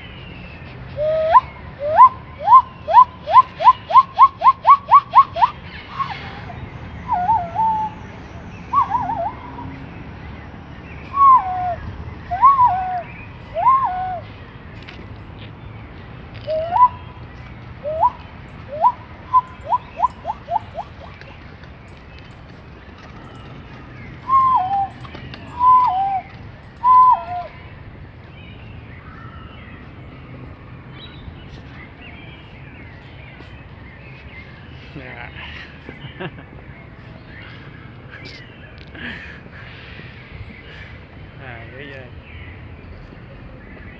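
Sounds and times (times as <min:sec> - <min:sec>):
person whistling bird call: 0:01.0 - 0:06.5, 0:07.1 - 0:08.0, 0:08.7 - 0:09.7, 0:11.1 - 0:14.2, 0:16.5 - 0:17.0, 0:17.8 - 0:21.2, 0:24.2 - 0:27.5.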